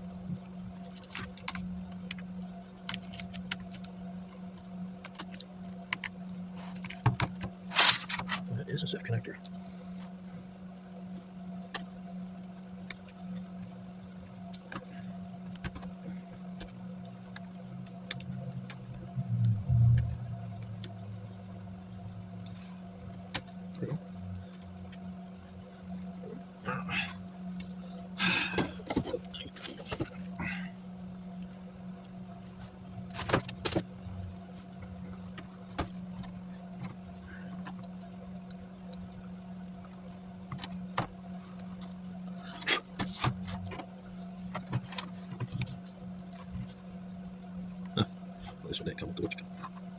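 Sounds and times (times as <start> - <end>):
steady low hum: 0.0 - 49.9
small clicks and taps: 0.8 - 7.5, 44.5 - 48.0.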